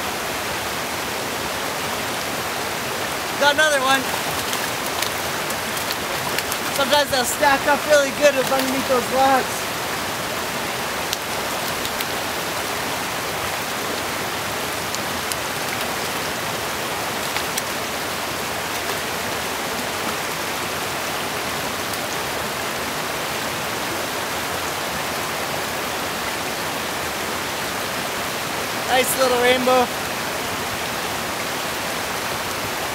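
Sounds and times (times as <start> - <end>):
stream water rushing: 0.0 - 32.9
faint clicks: 4.1 - 6.8, 11.1 - 12.2.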